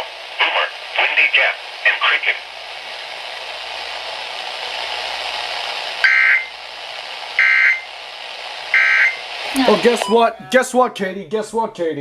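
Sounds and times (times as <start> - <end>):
radio static hiss: 0.0 - 11.1
shrill digital bursts: 8.8 - 11.0.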